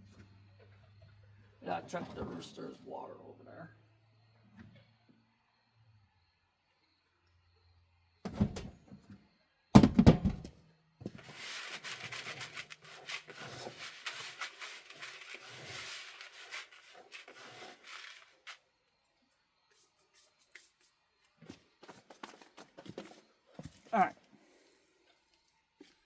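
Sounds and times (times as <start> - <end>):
heavy thumps: 8.3 - 8.7, 9.8 - 10.5
rustling and rattling with clicks: 11.1 - 18.6.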